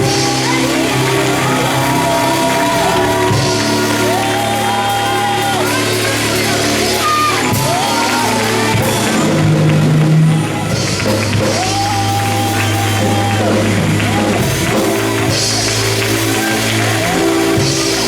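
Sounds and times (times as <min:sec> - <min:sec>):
people singing and shouting: 0:00.0 - 0:09.6
gospel music: 0:00.0 - 0:18.0.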